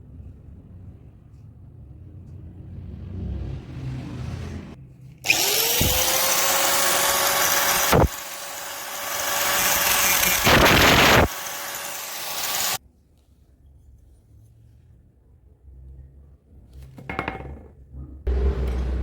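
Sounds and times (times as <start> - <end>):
electric drill motor whining: 5.2 - 12.8.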